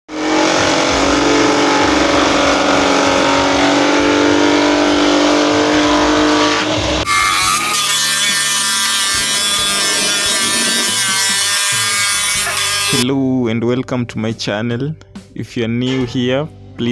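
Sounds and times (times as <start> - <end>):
motor whining: 5.0 - 13.0.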